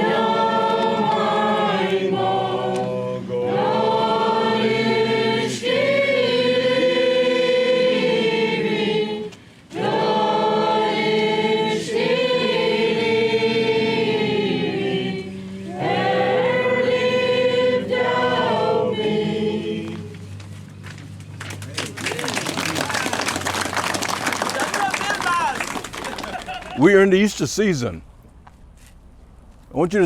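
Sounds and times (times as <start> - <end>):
choir singing a hymn: 0.0 - 20.4.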